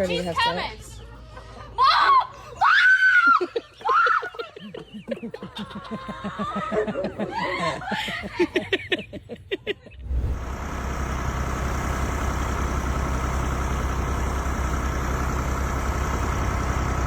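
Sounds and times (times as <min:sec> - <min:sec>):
laughter: 0:01.0 - 0:10.0
vehicle engine running: 0:10.0 - 0:17.0.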